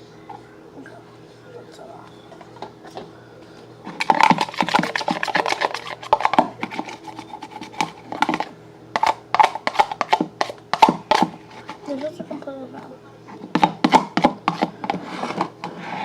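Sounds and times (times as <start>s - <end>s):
slime squelching and scraping: 3.9s - 12.3s.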